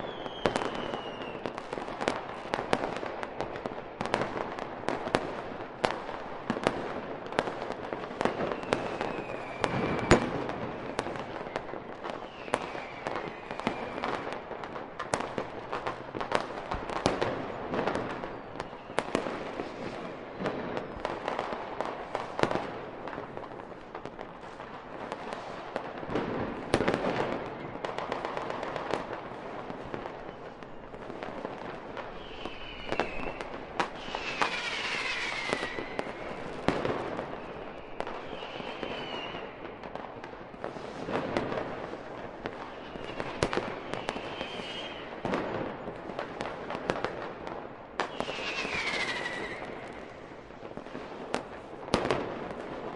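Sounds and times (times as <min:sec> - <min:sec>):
firework whistles falling in pitch: 0:00.0 - 0:01.6, 0:08.2 - 0:14.3, 0:32.1 - 0:39.8, 0:42.7 - 0:45.5, 0:48.0 - 0:50.4
fireworks bangs and crackles: 0:00.0 - 0:52.9.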